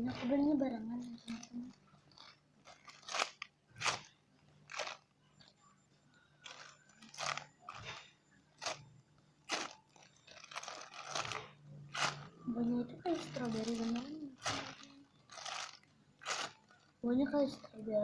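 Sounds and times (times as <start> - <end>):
faint low hum: 0.0 - 18.0
squishy toy rustling: 1.0 - 5.1, 6.4 - 8.9, 9.5 - 12.4, 13.0 - 17.1.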